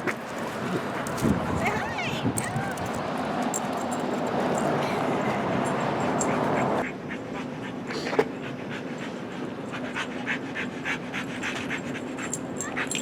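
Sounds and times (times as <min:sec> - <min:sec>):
dog panting: 0:05.2 - 0:13.0.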